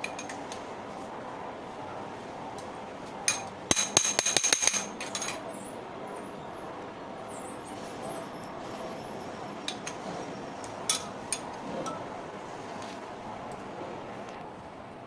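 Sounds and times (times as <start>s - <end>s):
hand tools striking metal: 3.3s - 5.4s.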